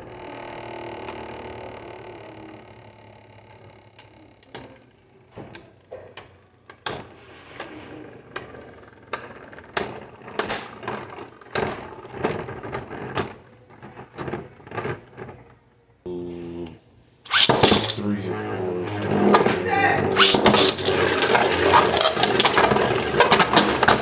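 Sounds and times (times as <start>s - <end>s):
plastic spinning tops clicking: 20.2s - 24.0s.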